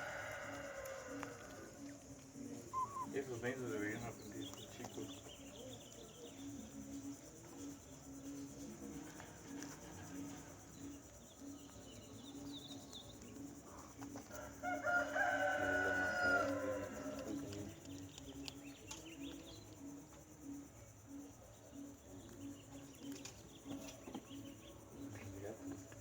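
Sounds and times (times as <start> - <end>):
rooster crowing: 0.0 - 1.9, 14.3 - 17.5.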